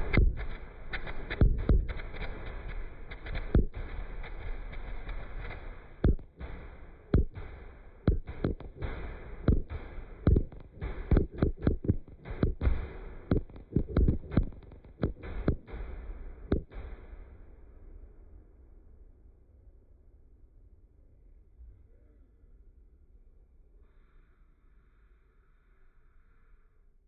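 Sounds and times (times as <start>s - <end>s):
low rumble: 7.1s - 15.7s.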